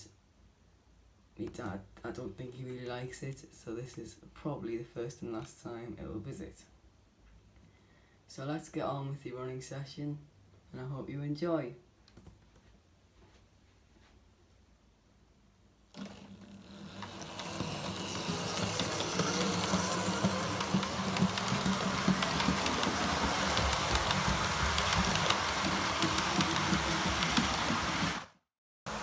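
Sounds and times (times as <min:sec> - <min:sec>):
model train motor humming: 0:16.0 - 0:28.3
wheels clicking on track: 0:16.0 - 0:28.3.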